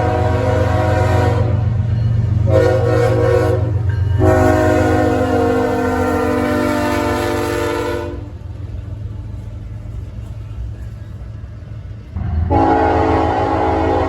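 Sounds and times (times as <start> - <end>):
locomotive air horn chord: 0.0 - 1.7, 2.5 - 8.3, 12.2 - 14.0
passing train rumble: 0.0 - 14.0.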